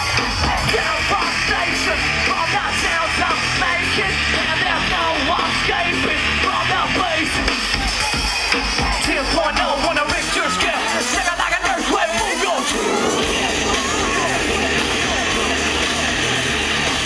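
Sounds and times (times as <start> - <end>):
drums: 0.0 - 17.0
heavy bass: 0.0 - 17.0
distorted electric guitar: 10.5 - 17.0
live rock band playing: 12.6 - 17.0.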